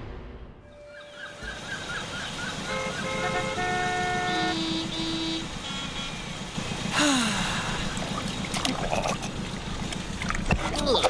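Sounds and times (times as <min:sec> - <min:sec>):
engine-like rumble: 0:00.0 - 0:11.0
horn-like tones: 0:02.6 - 0:06.4.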